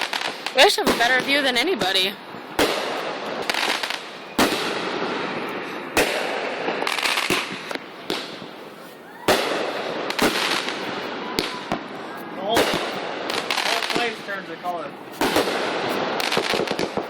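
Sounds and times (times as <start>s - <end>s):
fireworks bangs: 0.0s - 17.0s
fireworks crackling: 0.0s - 17.0s
rising firework whistle: 2.4s - 14.1s.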